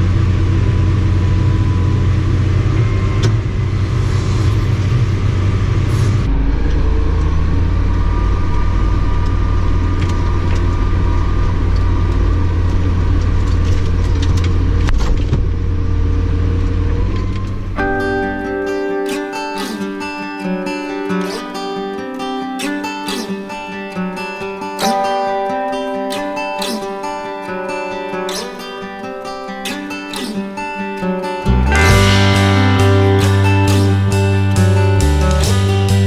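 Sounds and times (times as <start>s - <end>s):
combine harvester drone: 0.0s - 21.4s, 31.2s - 36.0s
thin whine: 16.0s - 36.0s.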